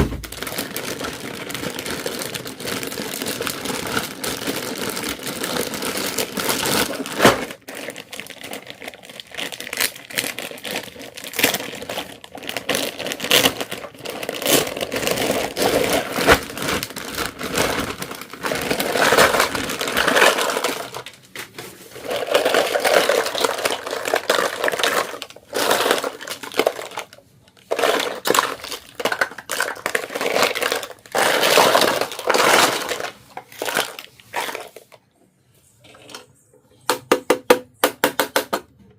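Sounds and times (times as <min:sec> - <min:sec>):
plastic packaging crinkling: 0:00.0 - 0:35.0
plastic pieces clicking: 0:22.0 - 0:34.8.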